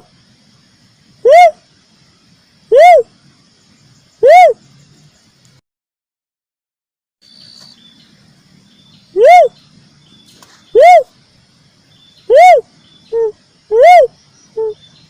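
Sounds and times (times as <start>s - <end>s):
dove call hooting notes: 9.2s - 9.6s, 10.7s - 11.1s, 12.3s - 14.8s.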